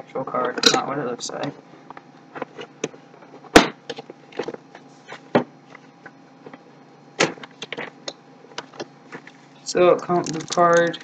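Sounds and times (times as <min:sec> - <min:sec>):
clicks taps and rustles: 0:07.2 - 0:09.4, 0:10.2 - 0:11.0.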